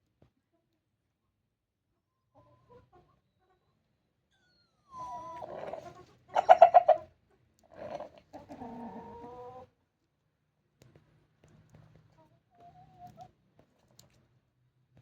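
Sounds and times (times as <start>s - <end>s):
rooster strained moaning call: 5.1s - 7.0s, 7.7s - 9.6s
rooster rapid clucks: 5.5s - 7.1s.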